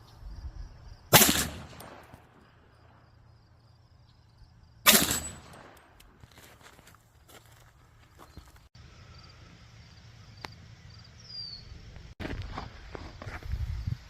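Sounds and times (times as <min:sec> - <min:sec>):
rifle shots: 0:01.1 - 0:02.3, 0:04.8 - 0:05.9.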